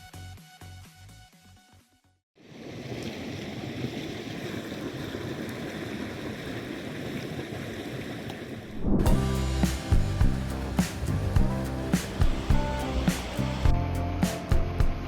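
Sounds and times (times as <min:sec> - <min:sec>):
stream water rushing: 0:02.4 - 0:14.6
loud music: 0:09.1 - 0:15.0.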